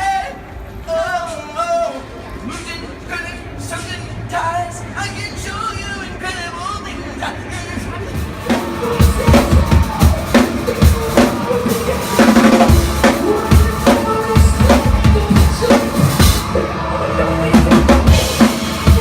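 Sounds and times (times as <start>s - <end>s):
rock drum kit playing: 8.2s - 19.0s.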